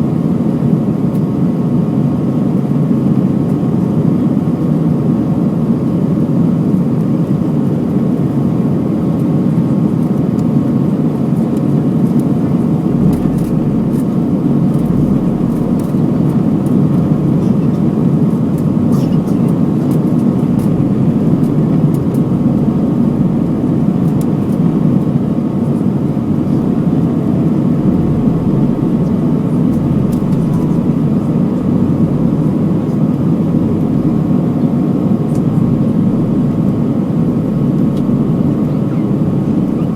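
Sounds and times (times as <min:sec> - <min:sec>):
airplane cabin rushing hum: 0:00.0 - 0:39.9
faint steady tones: 0:12.0 - 0:39.9.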